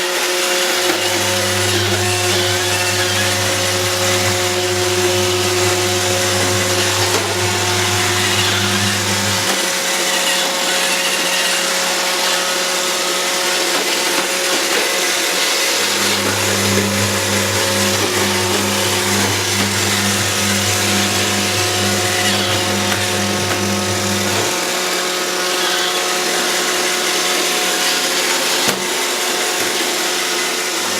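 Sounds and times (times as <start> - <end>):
robot vacuum whirring: 0.6 - 29.7
deep hum: 1.0 - 9.6, 15.9 - 24.4.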